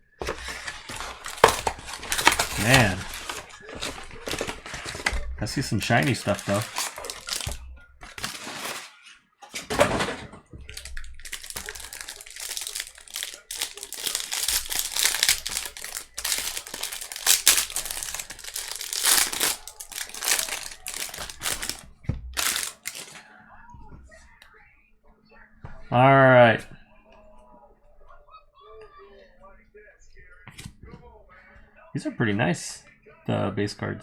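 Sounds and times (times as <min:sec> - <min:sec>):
plastic wrapping crinkling and tearing: 0:00.2 - 0:09.1, 0:10.7 - 0:23.2.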